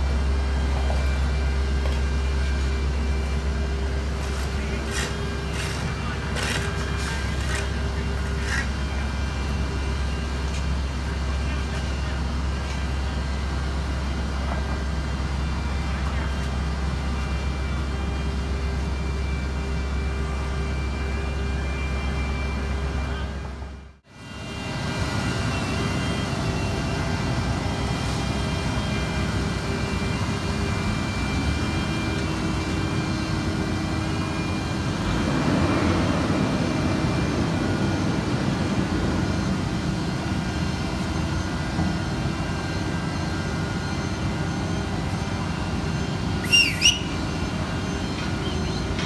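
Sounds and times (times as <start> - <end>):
constant machine whine: 0.0 - 49.0
diesel paving machinery running: 0.0 - 49.0
sharp high squeaks: 46.4 - 47.4.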